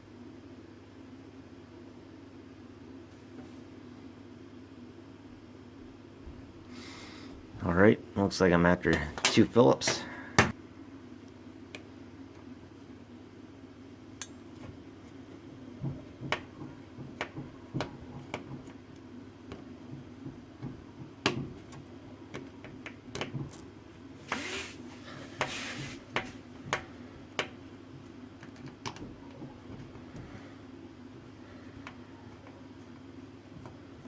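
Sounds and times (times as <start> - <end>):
steady low hum: 0.0 - 34.0
screwdriver clicks and taps: 20.6 - 23.6, 28.4 - 29.8
scraping rustle: 24.2 - 26.4.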